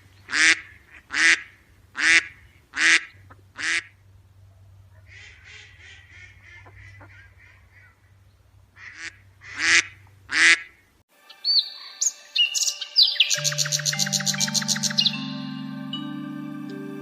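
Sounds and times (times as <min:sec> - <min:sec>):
ducks quacking: 0:00.3 - 0:03.9, 0:04.9 - 0:08.2, 0:08.8 - 0:10.8
music: 0:11.1 - 0:17.0.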